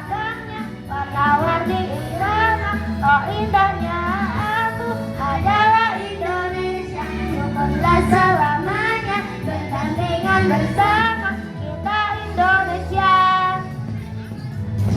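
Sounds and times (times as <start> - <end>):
children's choir singing: 0.0 - 13.7
accompanying music track: 0.0 - 14.9.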